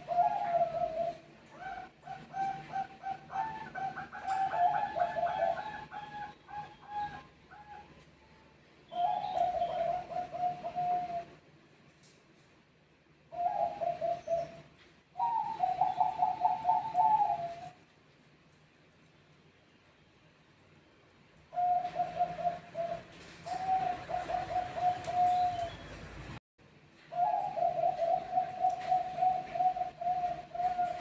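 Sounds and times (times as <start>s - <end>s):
doves cooing: 0.0s - 8.0s, 8.9s - 11.4s, 13.3s - 17.8s, 21.5s - 26.3s, 27.1s - 31.0s.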